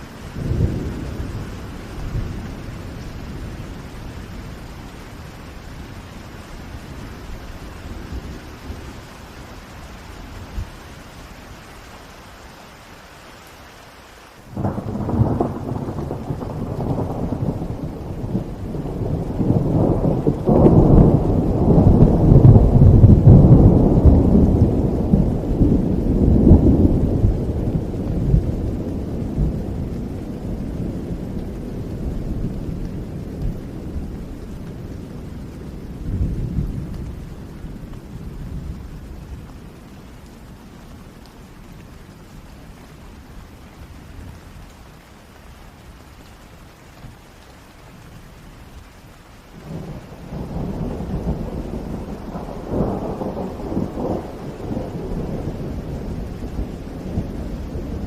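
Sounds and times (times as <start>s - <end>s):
steady rainfall: 0.0s - 58.0s
thunder rolling: 14.6s - 38.8s, 49.6s - 58.0s.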